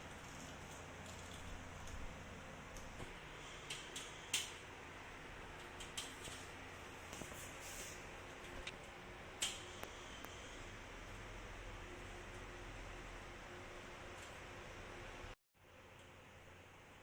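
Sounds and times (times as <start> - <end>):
light clicks and rustles of handling: 0.0 - 4.7.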